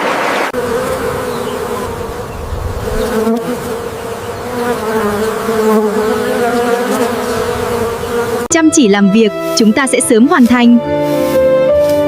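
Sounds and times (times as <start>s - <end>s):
insect buzzing close by: 0.6s - 8.5s.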